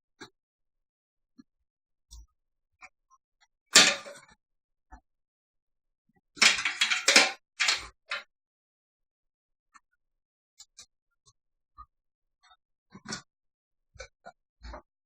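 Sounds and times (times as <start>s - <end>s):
computer parts clattering: 3.8s - 4.1s, 6.4s - 8.2s.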